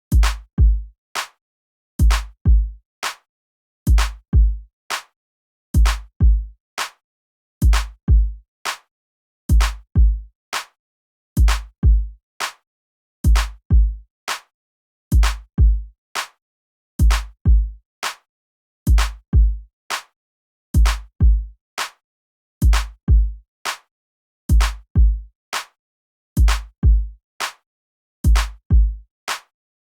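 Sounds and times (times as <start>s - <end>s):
electronic drum beat: 0.1s - 0.5s.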